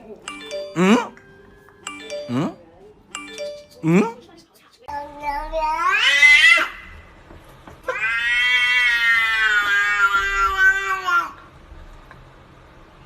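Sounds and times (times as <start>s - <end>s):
cat yowling: 7.9s - 11.4s.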